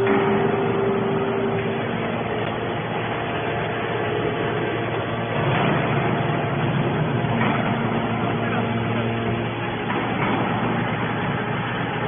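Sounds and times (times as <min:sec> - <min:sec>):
baler mechanical noise: 0:00.0 - 0:12.0
hum: 0:00.0 - 0:12.0.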